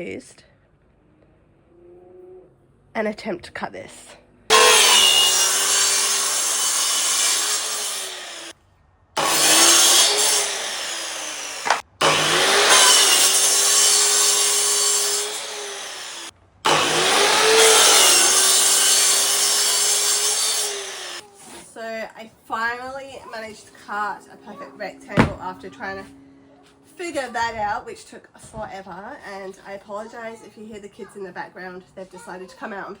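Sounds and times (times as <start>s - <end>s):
power saw cutting plywood: 4.5s - 8.6s, 9.2s - 21.7s, 24.9s - 27.3s.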